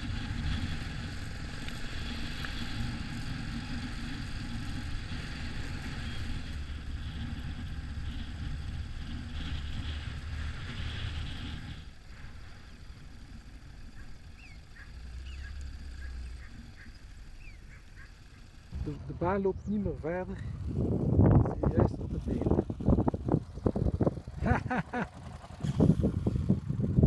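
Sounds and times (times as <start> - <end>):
motorcycle engine running: 0.0 - 27.0
short bird calls: 13.8 - 18.6.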